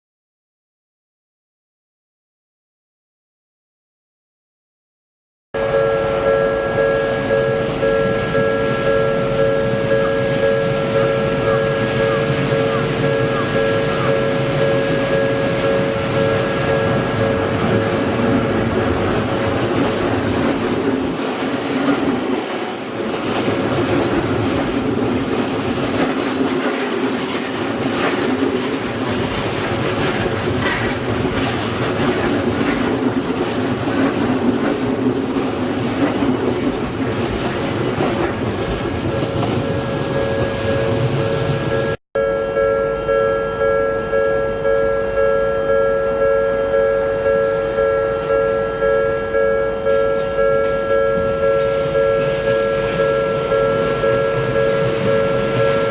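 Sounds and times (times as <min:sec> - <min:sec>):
level crossing warning bell: 0:05.6 - 0:23.8, 0:39.0 - 0:55.9
train wheels rattling over rails: 0:16.0 - 0:41.2.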